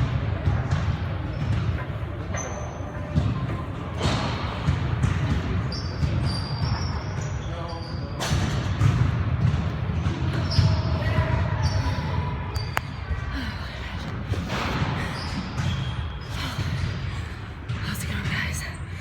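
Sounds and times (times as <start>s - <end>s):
woman panting heavily: 13.3s - 15.2s.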